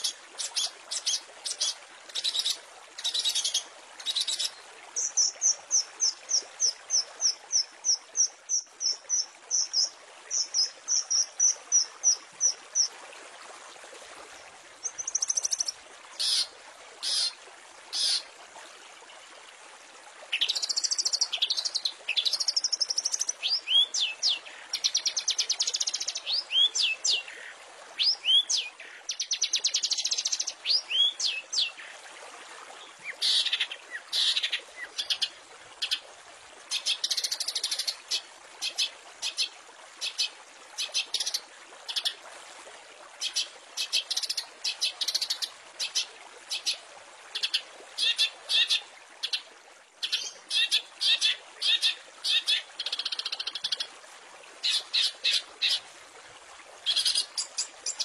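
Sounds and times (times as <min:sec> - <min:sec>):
bird singing varied song: 0:20.4 - 0:27.3.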